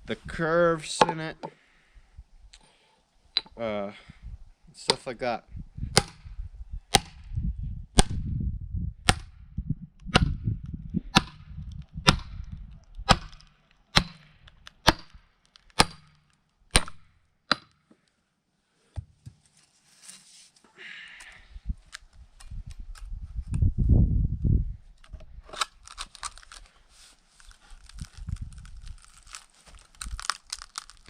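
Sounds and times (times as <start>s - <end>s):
tool striking log: 5.9s - 6.2s, 6.9s - 7.2s, 9.0s - 9.3s, 10.1s - 10.4s, 11.1s - 11.4s, 12.0s - 12.4s, 13.0s - 15.2s, 15.8s - 17.8s.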